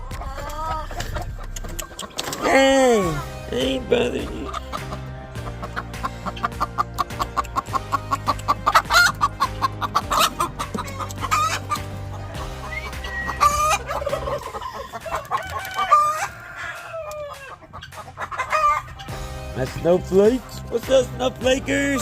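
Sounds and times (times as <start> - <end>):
background music: 0.0 - 22.0
chickens clucking: 0.0 - 22.0
rooster crowing: 14.4 - 17.5.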